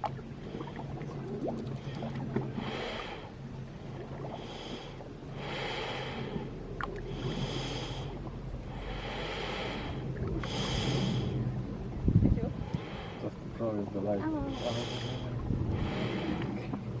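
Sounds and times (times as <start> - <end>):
breath-like hissing from rock holes: 8.8 - 11.4.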